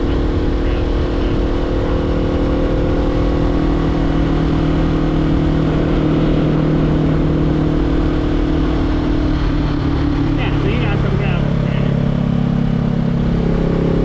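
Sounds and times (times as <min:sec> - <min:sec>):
wind rush on microphone: 0:00.0 - 0:11.3
motorcycle engine cruising: 0:00.0 - 0:14.0.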